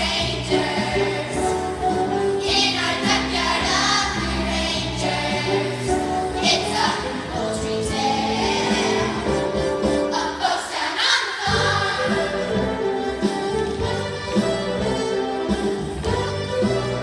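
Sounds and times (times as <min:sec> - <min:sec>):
young chorus singing: 0:00.0 - 0:12.6
musical accompaniment: 0:00.0 - 0:17.0.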